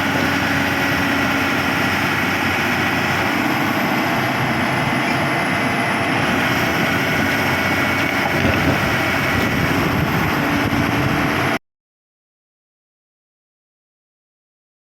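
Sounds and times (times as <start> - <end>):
diesel engine running: 0.0 - 11.6.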